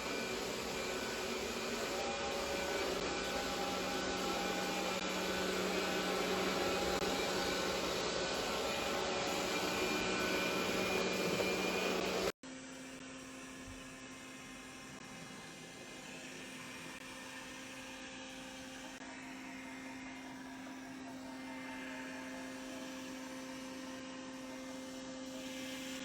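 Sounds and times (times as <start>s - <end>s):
robot vacuum cleaner running: 0.0s - 26.0s.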